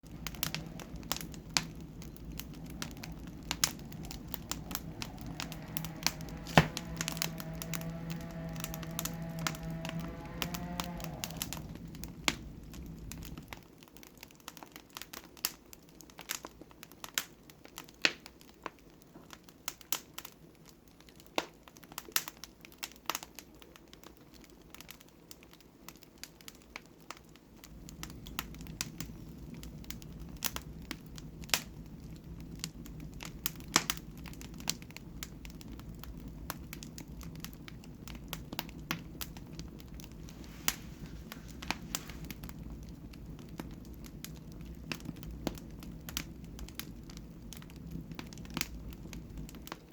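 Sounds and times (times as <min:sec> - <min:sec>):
low steady rumble: 0:00.0 - 0:13.6, 0:27.6 - 0:49.9
wood fire crackling and popping: 0:00.0 - 0:49.9.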